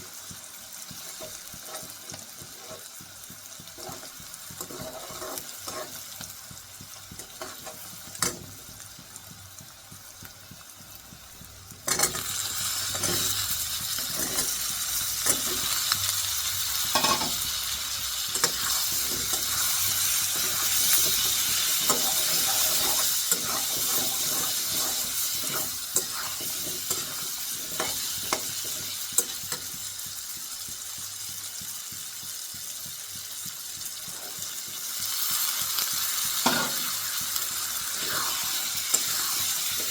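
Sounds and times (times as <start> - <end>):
cabbage sizzling in a pan: 0.0 - 39.9
stirring clicks and scrapes: 18.3 - 29.8.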